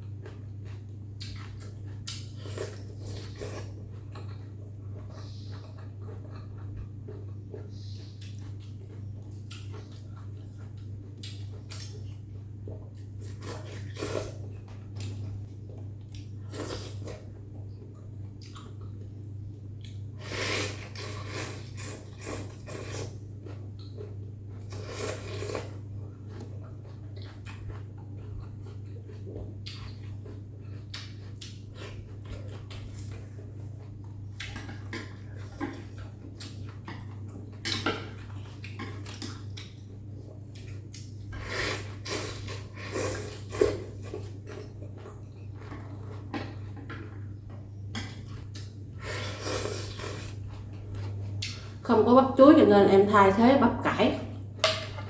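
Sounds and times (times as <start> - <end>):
person chewing noodle soup: 0.0 - 51.8
steady low hum: 0.0 - 55.0
utensils clinking against bowl: 54.6 - 55.0.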